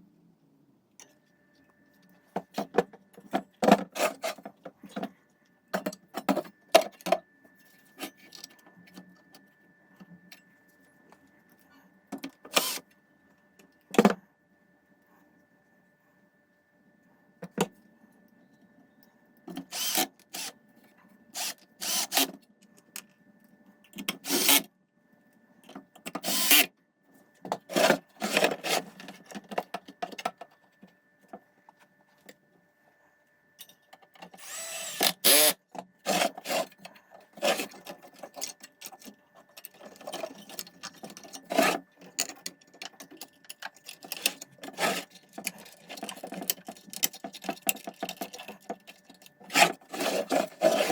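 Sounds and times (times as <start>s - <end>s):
scraping and rubbing on parts: 27.5s - 29.7s, 36.1s - 50.9s.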